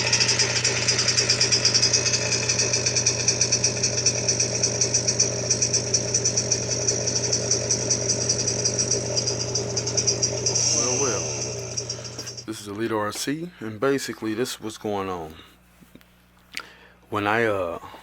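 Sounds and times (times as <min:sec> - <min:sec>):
small gas engine idling: 0:00.0 - 0:12.5.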